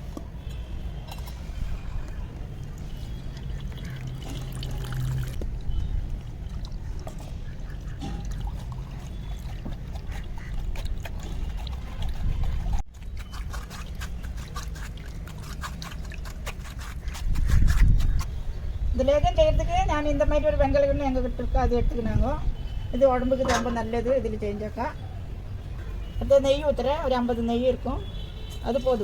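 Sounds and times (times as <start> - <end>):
liquid trickling through a sieve: 1.1 - 18.0.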